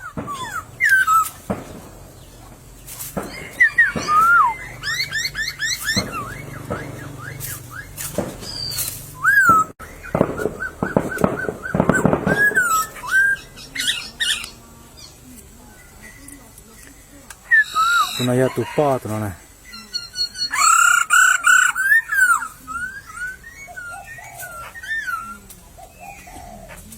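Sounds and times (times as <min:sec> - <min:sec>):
dense rattling burst: 0:00.0 - 0:14.7
harsh bird chattering: 0:00.0 - 0:15.2, 0:17.4 - 0:26.8
birds singing slurred whistles: 0:00.0 - 0:26.9.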